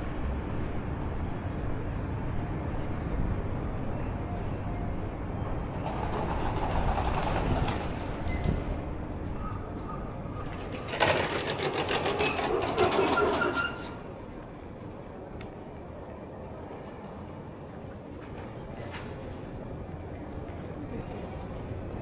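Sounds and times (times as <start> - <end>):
busy city street ambience: 0.0 - 22.0
rapid mechanical rattle: 5.7 - 8.8, 10.4 - 13.6.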